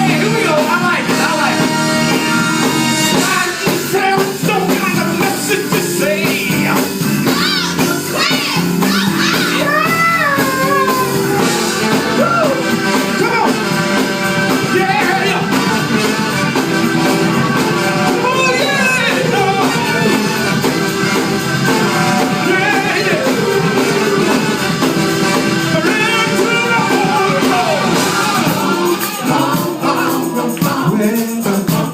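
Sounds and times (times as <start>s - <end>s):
backing band: 0.0s - 31.9s
person singing with vibrato: 3.1s - 13.6s, 17.6s - 31.9s.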